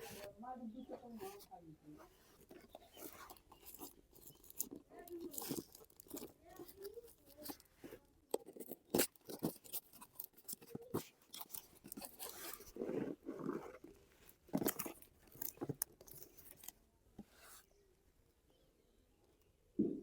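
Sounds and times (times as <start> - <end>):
packaging rustling and crinkling: 1.0 - 16.8.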